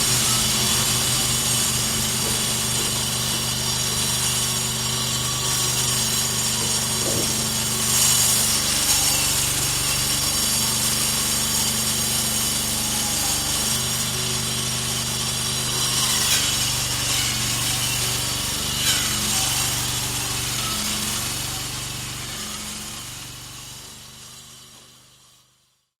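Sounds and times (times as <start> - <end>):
loud scrapes on stone: 0.0 - 9.7
stone polishing machine grinding: 0.0 - 25.5.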